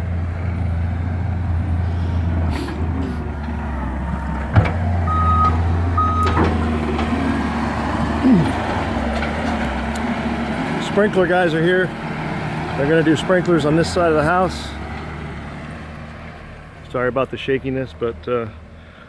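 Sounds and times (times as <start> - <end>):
diesel engine droning: 0.0 - 19.0
backup alarm beeps: 5.1 - 6.5.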